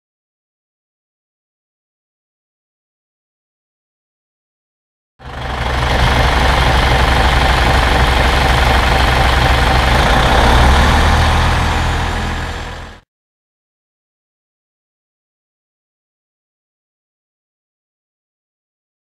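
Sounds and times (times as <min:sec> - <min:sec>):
vehicle engine running: 0:05.2 - 0:13.0.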